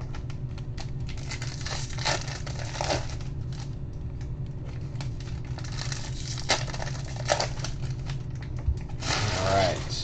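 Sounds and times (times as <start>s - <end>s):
steady low hum: 0.0s - 10.0s
wrapper crinkling and tearing: 1.0s - 3.7s, 5.0s - 10.0s.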